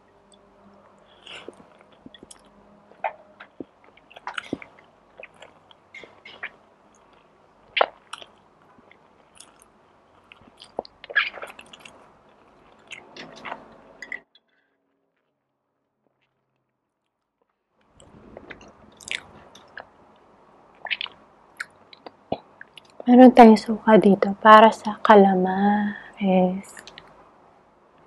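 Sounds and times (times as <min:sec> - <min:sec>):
mouth clicks and smacks: 0:01.2 - 0:12.0, 0:18.0 - 0:19.9, 0:20.8 - 0:23.0
chewing and biting: 0:09.3 - 0:12.0, 0:18.4 - 0:19.9.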